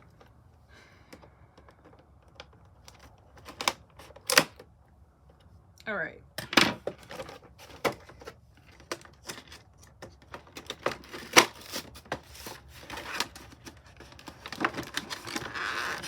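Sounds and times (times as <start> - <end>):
plastic crinkling: 7.0 - 16.0.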